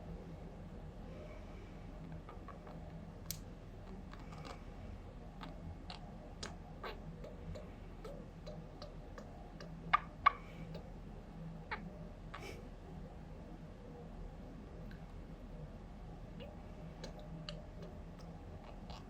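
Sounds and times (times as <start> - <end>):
budgerigar popping clicks: 5.4 - 10.8.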